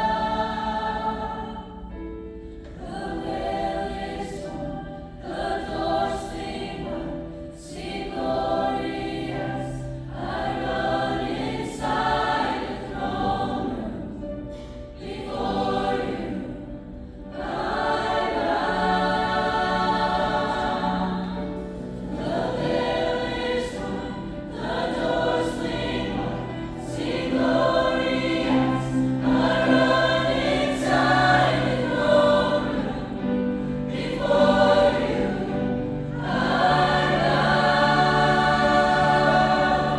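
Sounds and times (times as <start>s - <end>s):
choir singing a worship song: 0.0s - 39.9s.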